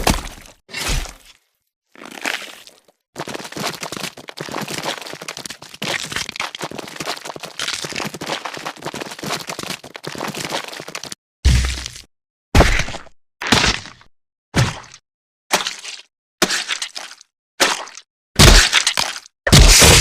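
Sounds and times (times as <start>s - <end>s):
bones cracking and crunching: 0.0s - 1.3s, 2.0s - 14.1s.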